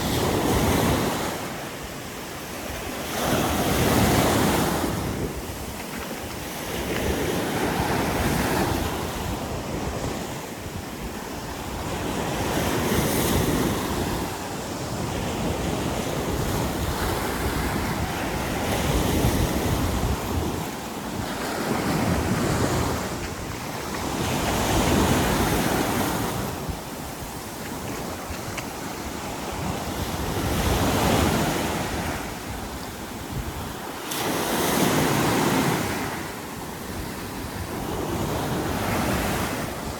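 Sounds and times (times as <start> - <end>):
waves breaking on a beach: 0.0 - 39.9
wind buffeting microphone: 2.8 - 33.9.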